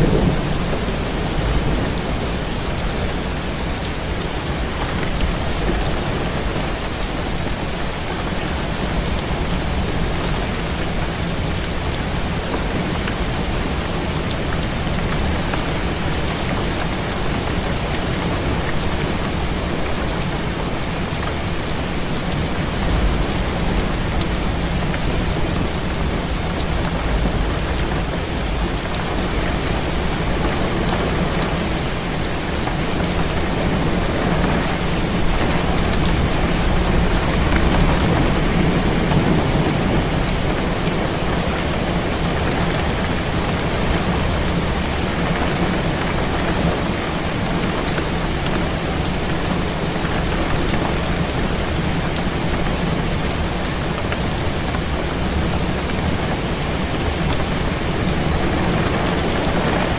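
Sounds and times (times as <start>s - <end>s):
low rumble: 0.0s - 3.6s
heavy rain on a window: 0.0s - 59.9s.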